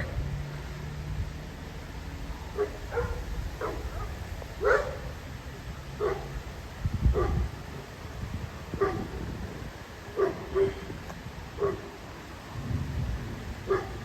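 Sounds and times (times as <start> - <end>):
dog barking: 2.6 - 5.2, 6.0 - 6.4, 7.1 - 7.6, 8.8 - 9.2, 10.2 - 11.0, 11.6 - 12.0, 13.6 - 14.0
low rumble: 12.5 - 13.7.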